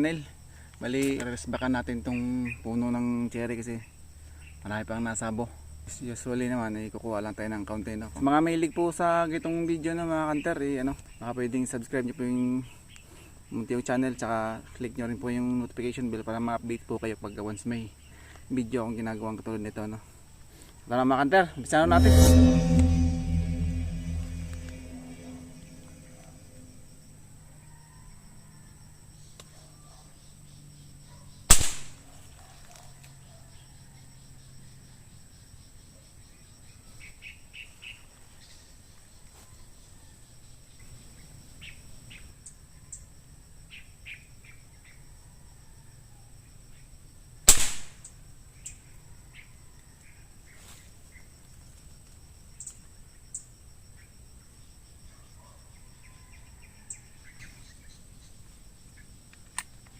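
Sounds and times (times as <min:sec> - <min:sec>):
insect drone: 0:21.7 - 0:27.1.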